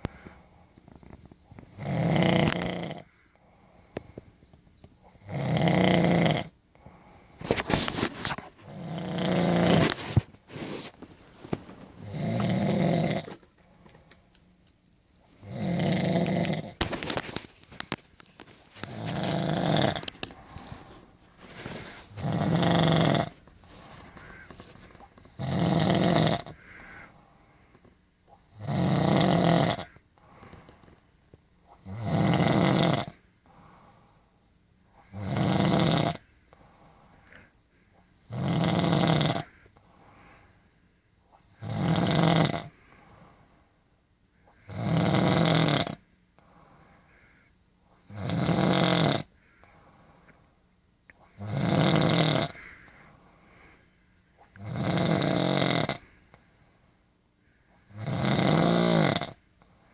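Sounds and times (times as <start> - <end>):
woman snoring: 0.9 - 3.1, 5.2 - 6.6, 8.7 - 10.0, 12.0 - 13.4, 15.4 - 16.8, 18.8 - 20.7, 21.7 - 23.4, 25.2 - 27.0, 28.4 - 30.6, 31.8 - 33.2, 35.0 - 36.2, 38.2 - 39.5, 41.4 - 42.7, 44.6 - 46.0, 48.0 - 49.3, 51.2 - 52.6, 54.4 - 56.0, 57.8 - 59.4.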